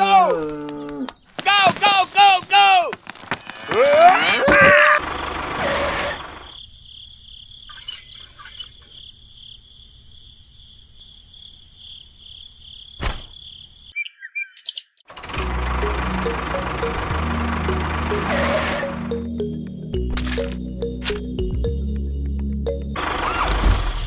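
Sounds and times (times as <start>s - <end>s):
birds chirping: 0.0s - 2.6s, 7.5s - 9.6s, 13.5s - 15.1s
high insect-like trill: 7.6s - 9.6s.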